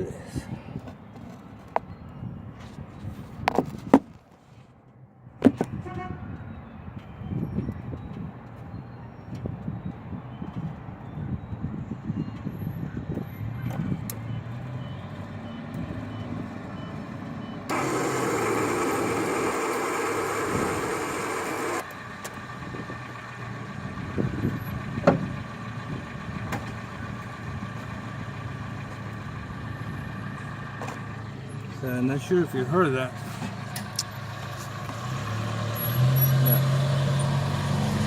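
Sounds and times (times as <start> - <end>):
starter motor buzzing: 17.7 - 21.9.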